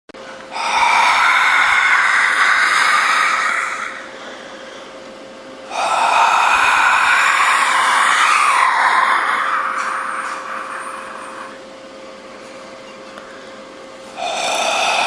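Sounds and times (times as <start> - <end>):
breathy rush of air: 5.7 - 11.6, 13.3 - 15.0.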